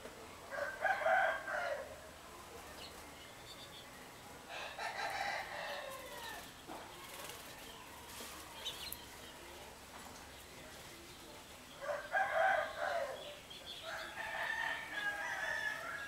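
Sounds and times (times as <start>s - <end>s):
rooster crowing: 0.5s - 1.9s, 4.5s - 6.4s, 11.8s - 13.2s, 13.8s - 16.0s
small birds chirping: 1.9s - 16.0s.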